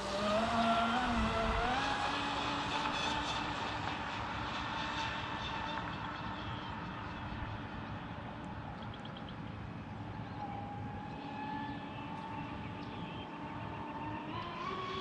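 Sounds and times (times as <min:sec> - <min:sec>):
electric motor whine: 0:00.0 - 0:06.6, 0:10.1 - 0:15.0.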